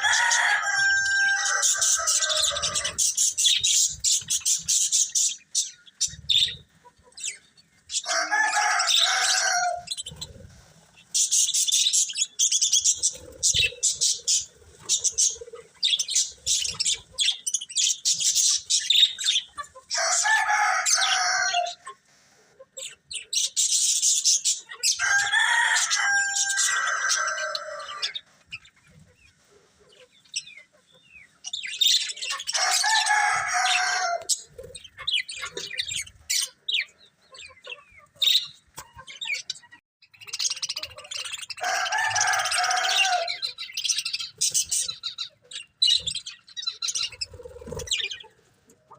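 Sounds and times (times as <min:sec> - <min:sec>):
budgerigars chirping: 0:01.2 - 0:10.4, 0:11.0 - 0:20.2, 0:29.9 - 0:48.3.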